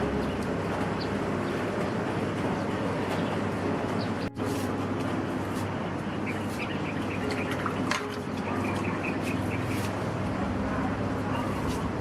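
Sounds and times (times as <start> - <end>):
birds chirping: 0.0 - 4.3, 5.6 - 10.1
steady low hum: 0.0 - 12.0.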